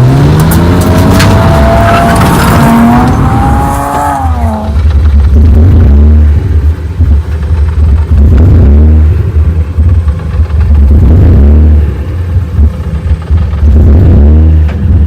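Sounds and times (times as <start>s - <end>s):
car engine revving: 0.0s - 15.0s
heavy low rumble: 0.0s - 15.0s.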